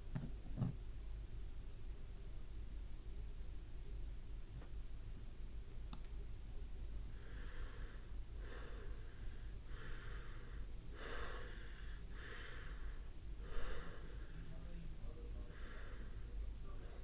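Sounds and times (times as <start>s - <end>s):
person breathing heavily: 7.1s - 14.6s, 15.4s - 17.0s.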